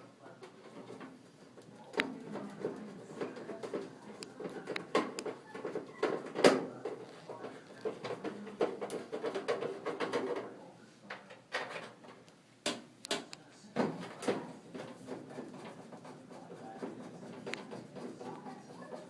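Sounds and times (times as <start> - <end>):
plastic and metal clicks and knocks: 11.1 - 14.4.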